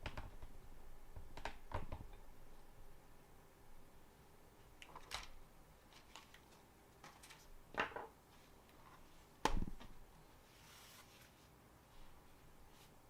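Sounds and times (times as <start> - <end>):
hands handling laptop and tools: 4.8 - 10.0.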